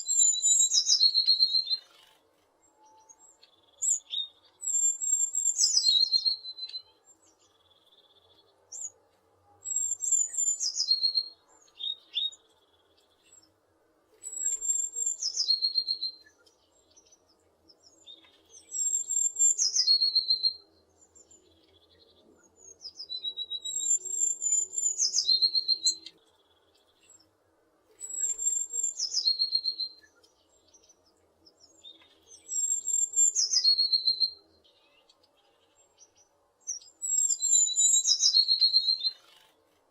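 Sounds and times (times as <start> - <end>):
bird singing high chirping notes: 23.0 - 26.1, 28.0 - 30.1, 32.4 - 34.4, 36.7 - 39.2.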